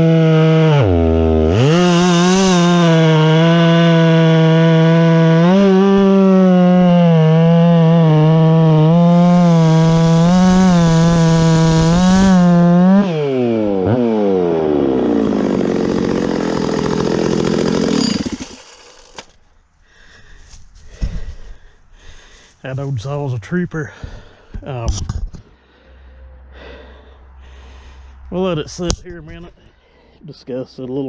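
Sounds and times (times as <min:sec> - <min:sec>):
chainsaw running and idling: 0:00.0 - 0:19.5.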